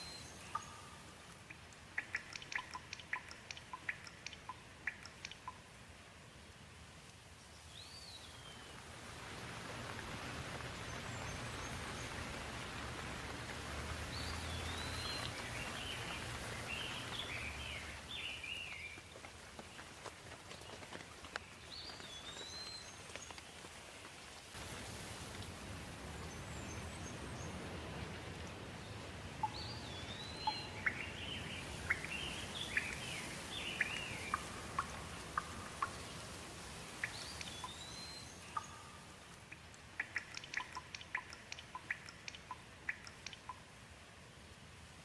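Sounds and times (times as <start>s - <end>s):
steady rain hiss: 0.0s - 45.0s
quick sharp ticks: 1.3s - 5.6s, 39.5s - 43.6s
birds singing: 14.0s - 19.1s, 28.8s - 39.4s.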